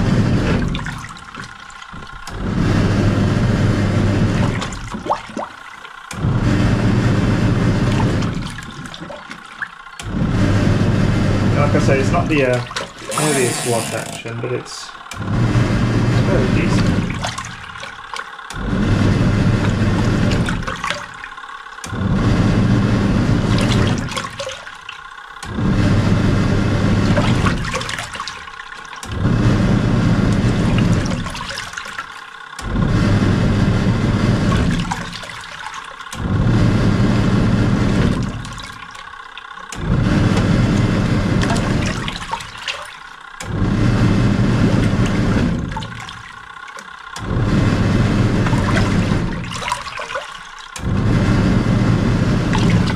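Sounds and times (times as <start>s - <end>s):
washing machine motor churning water: 0.0s - 52.9s.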